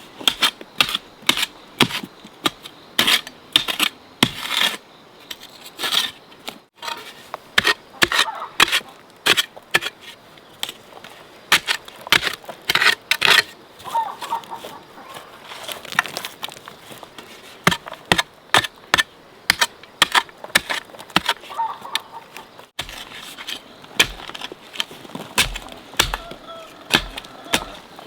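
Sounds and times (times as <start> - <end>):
sharp irregular knocks: 24.0 - 24.5, 25.4 - 27.9.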